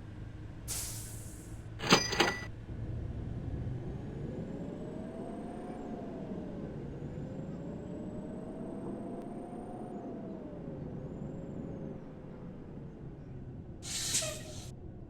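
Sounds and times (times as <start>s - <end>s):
vehicle engine running under load: 0.0s - 15.0s
metallic clank: 1.8s - 2.5s.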